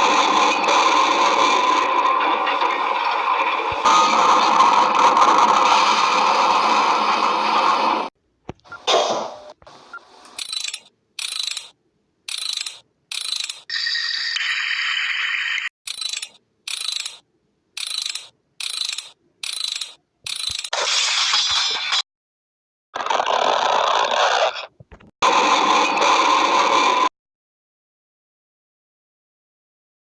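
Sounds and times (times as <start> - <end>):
mechanical ratcheting: 10.4 - 13.7, 15.8 - 17.2, 17.8 - 20.8.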